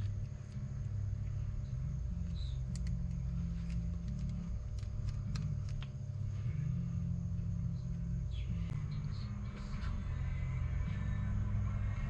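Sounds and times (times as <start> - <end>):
low rumble: 0.0 - 12.0.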